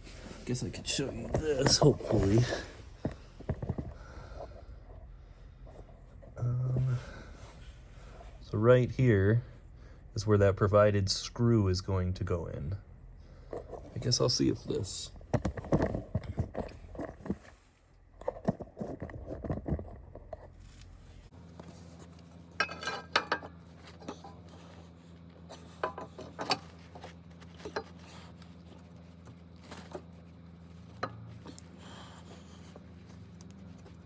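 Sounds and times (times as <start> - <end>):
faint low hum: 0.0 - 34.0
metal parts clicking and scraping: 22.5 - 24.4.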